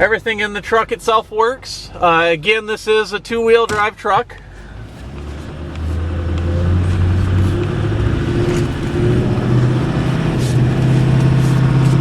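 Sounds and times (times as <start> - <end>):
truck engine revving: 4.6 - 12.0.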